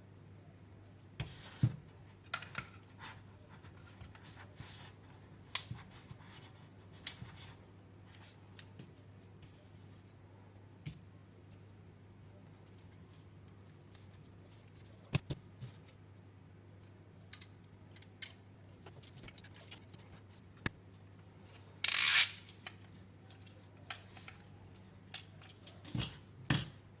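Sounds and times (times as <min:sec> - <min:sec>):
small clicks and taps of parts: 0:16.8 - 0:20.0.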